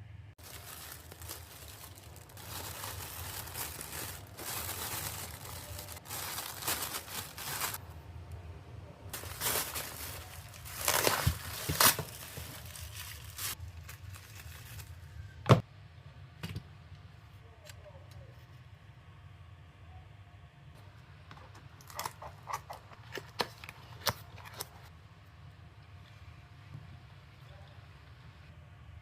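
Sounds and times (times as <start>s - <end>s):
packaging crinkling and rustling: 0.4s - 7.8s, 9.1s - 15.2s, 21.4s - 24.9s.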